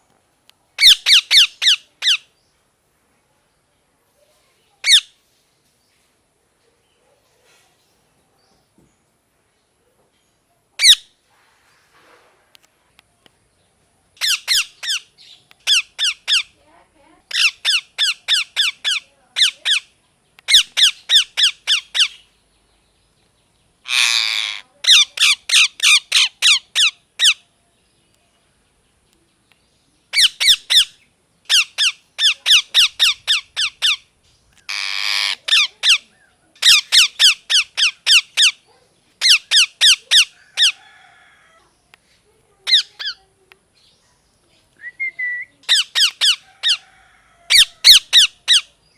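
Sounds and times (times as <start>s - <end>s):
parakeet harsh screeches: 0.8s - 2.2s, 14.2s - 15.0s, 17.3s - 19.8s, 23.9s - 27.4s, 34.7s - 36.0s, 42.7s - 43.2s, 47.5s - 48.6s
parakeet shrill squawks: 0.8s - 2.2s, 4.8s - 5.1s, 10.8s - 11.0s, 14.2s - 15.0s, 15.7s - 16.5s, 17.3s - 19.9s, 20.5s - 22.2s, 23.9s - 27.4s, 30.2s - 30.9s, 31.5s - 34.0s, 34.7s - 36.0s, 36.6s - 38.6s, 39.2s - 40.8s, 42.7s - 43.2s, 45.6s - 46.9s, 47.5s - 48.7s.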